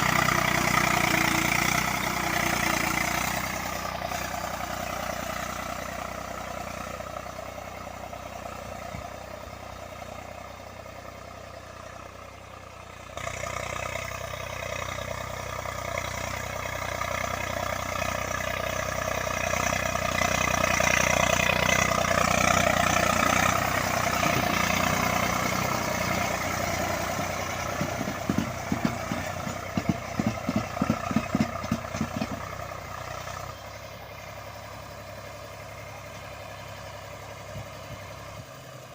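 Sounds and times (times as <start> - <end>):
tractor diesel engine running: 0.0 - 38.9
irregular clattering knocks: 27.7 - 32.5.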